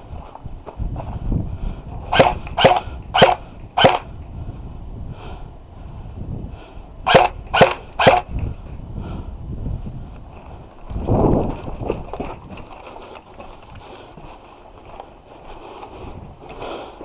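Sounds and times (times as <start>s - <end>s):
airsoft gun shots: 2.1s - 4.1s, 7.1s - 8.3s.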